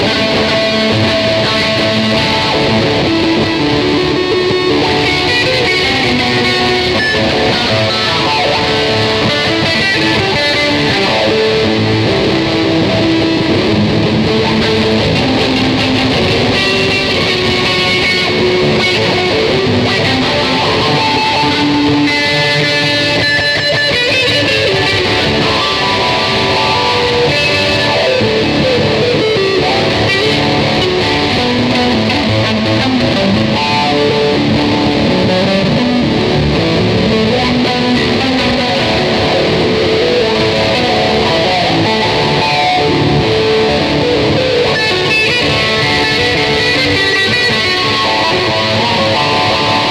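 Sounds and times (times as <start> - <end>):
electric guitar jam: 0.0 - 49.9.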